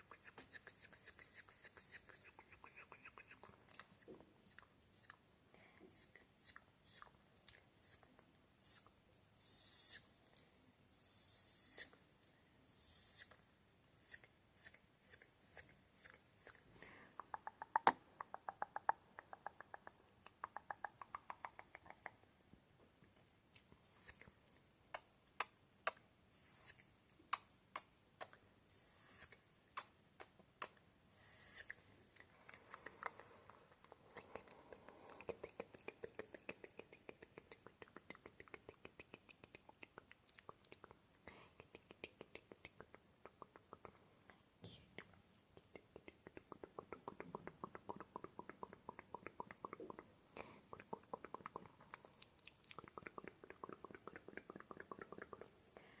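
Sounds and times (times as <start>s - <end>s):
wet tongue and lip clicks: 0.0s - 5.3s, 17.2s - 22.3s, 23.1s - 28.4s, 29.0s - 41.0s, 41.6s - 44.3s, 45.0s - 55.8s
hissed sk mouth sounds: 0.0s - 10.2s, 10.9s - 12.0s, 12.6s - 22.2s, 23.8s - 44.0s, 44.8s - 55.7s.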